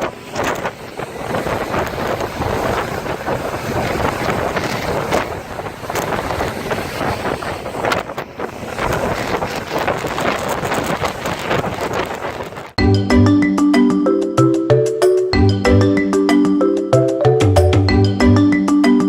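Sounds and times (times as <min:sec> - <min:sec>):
wind buffeting microphone: 0:00.0 - 0:12.8
boat rushing on water: 0:00.0 - 0:13.4.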